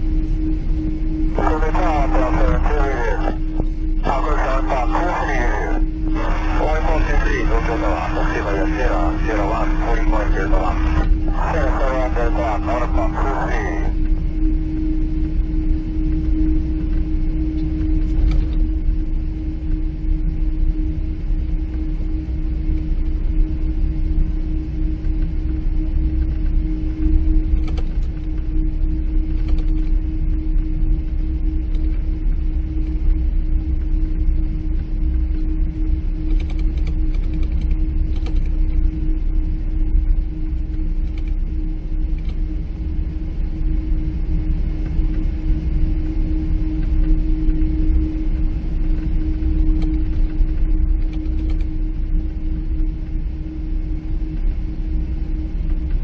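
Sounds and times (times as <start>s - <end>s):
airplane cabin low rumble: 0.0s - 56.0s
steady hum: 0.0s - 56.0s
faint clicks and rattles: 27.6s - 28.2s, 29.4s - 29.9s, 36.3s - 38.6s, 41.0s - 41.4s, 51.0s - 51.8s.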